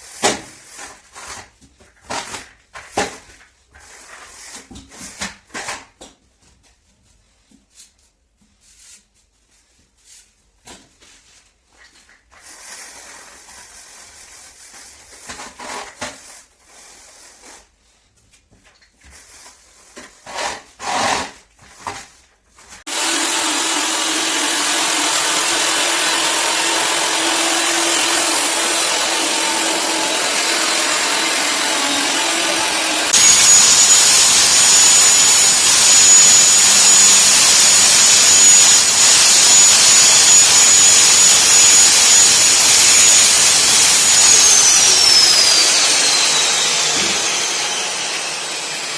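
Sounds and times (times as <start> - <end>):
power tool whirring: 22.9 - 48.9.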